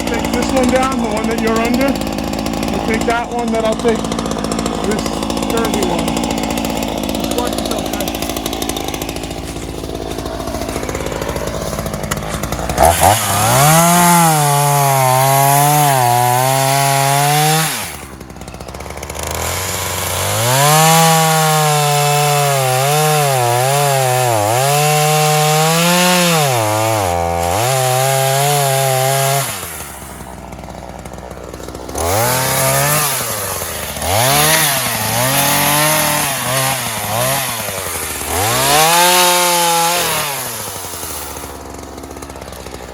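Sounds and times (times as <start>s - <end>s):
chainsaw idling and revving: 0.0s - 42.9s.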